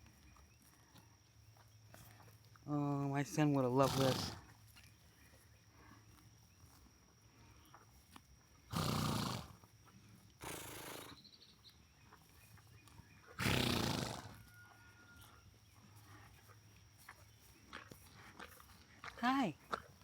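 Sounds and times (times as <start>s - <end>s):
horses snorting: 3.8s - 4.6s, 8.7s - 9.7s, 10.4s - 11.2s, 13.3s - 14.5s.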